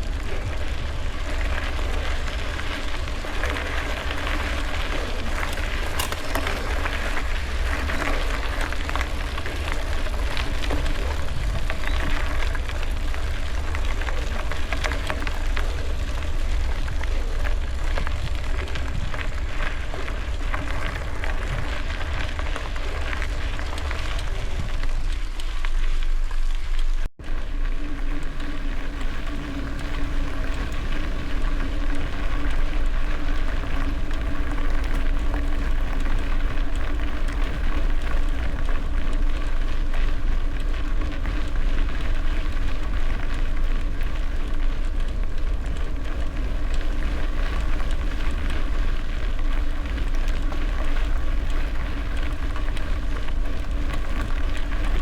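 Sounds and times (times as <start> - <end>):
wind buffeting microphone: 0.0 - 26.4, 27.2 - 55.0
bicycle tyres crunching over gravel: 0.0 - 55.0
faint steady hum: 27.0 - 55.0.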